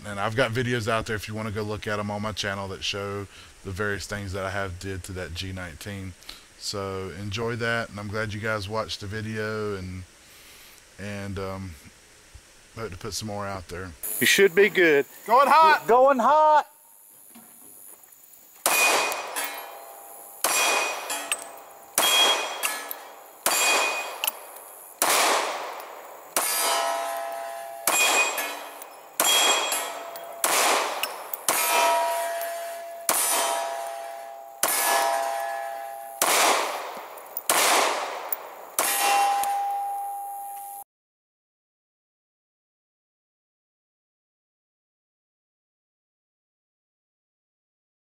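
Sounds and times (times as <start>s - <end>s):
pistol shots: 18.6s - 19.8s, 20.4s - 39.5s
metallic ringing clang: 18.7s - 24.6s, 26.4s - 36.3s, 38.3s - 40.8s.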